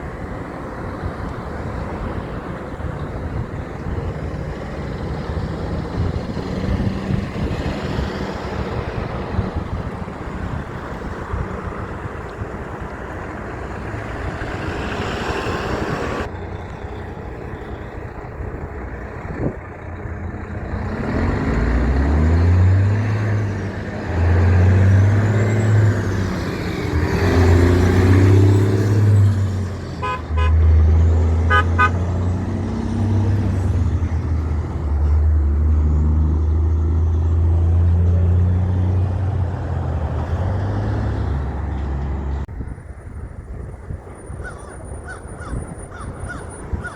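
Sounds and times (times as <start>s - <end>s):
truck diesel engine shifting gears: 0.0s - 46.9s
truck horn toots: 30.0s - 32.6s.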